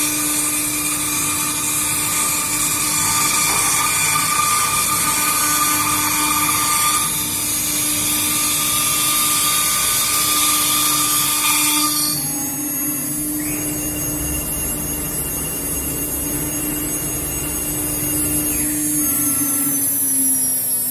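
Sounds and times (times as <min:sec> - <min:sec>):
router spindle whine: 0:00.0 - 0:20.9
thin high whine: 0:00.0 - 0:20.9.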